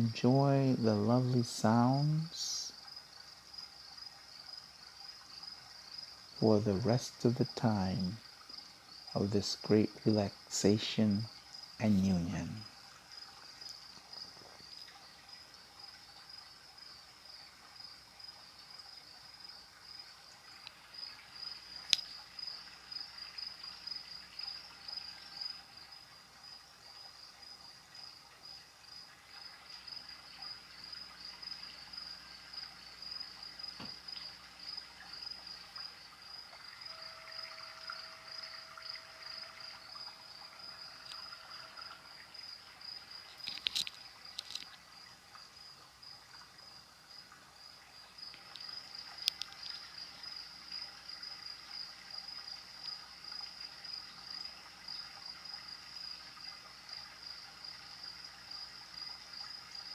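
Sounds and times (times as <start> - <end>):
crickets chirping: 0.0 - 59.9
sharp clicks: 48.3 - 49.8.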